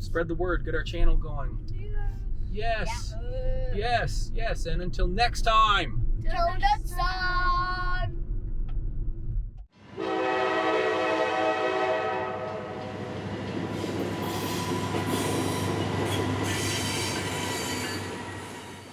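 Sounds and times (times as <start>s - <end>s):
locomotive horn: 9.8s - 13.2s
train wheels rumbling and clattering: 12.4s - 18.9s.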